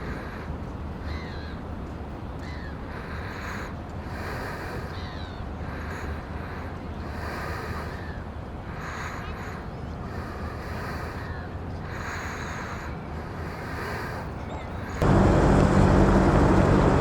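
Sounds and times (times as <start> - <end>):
wind: 0.0 - 17.0
surf rumbling: 15.0 - 17.0.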